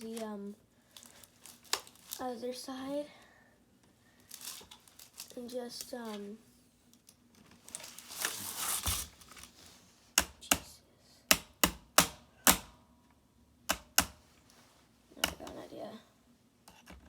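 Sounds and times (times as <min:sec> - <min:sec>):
rustling handling: 0:00.0 - 0:02.7, 0:04.1 - 0:10.1.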